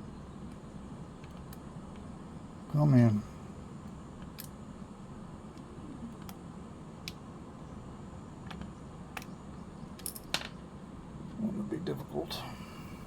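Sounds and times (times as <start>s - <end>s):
faint steady hum: 0.0s - 13.0s
light clicks of small parts: 0.4s - 2.1s, 3.8s - 4.6s, 5.5s - 7.3s, 8.4s - 10.6s.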